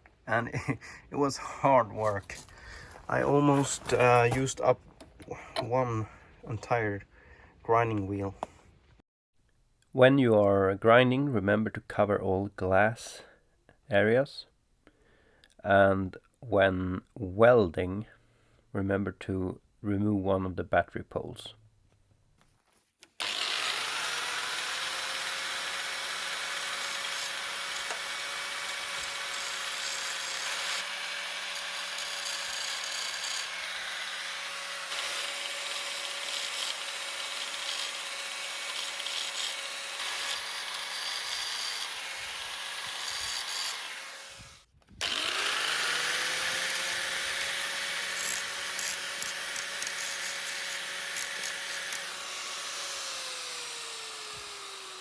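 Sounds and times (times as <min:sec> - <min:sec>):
angle grinder grinding steel: 0:23.2 - 0:55.0.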